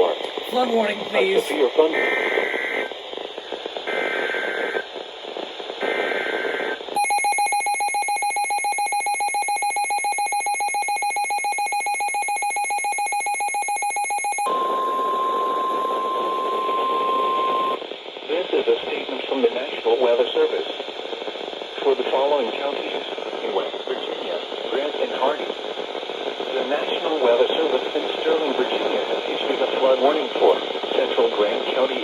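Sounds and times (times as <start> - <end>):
steady high-pitched radio tone: 0.0 - 4.8, 5.8 - 17.8
harsh two-tone attention signal: 7.0 - 17.8.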